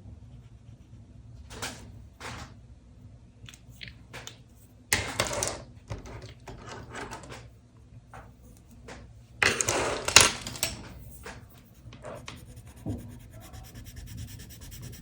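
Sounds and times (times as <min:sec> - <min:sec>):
pen scratching on paper: 0:11.6 - 0:15.0.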